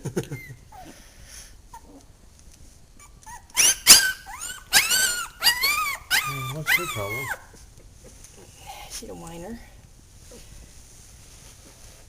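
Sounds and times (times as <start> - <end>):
puppy whining: 0.3 - 1.0, 1.7 - 2.1, 3.0 - 7.6
faint puppy squeaks: 3.0 - 7.6.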